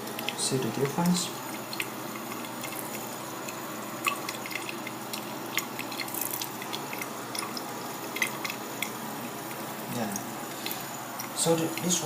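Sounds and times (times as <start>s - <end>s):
steady hiss: 0.0s - 12.0s.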